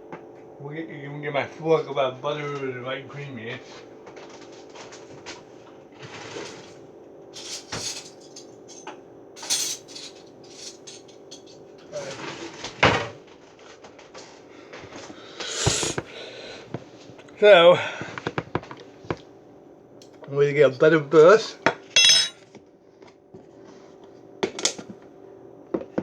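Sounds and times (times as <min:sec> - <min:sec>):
dishes and cutlery clattering: 0:07.4 - 0:11.5, 0:22.0 - 0:22.4
steady low hum: 0:09.4 - 0:11.6.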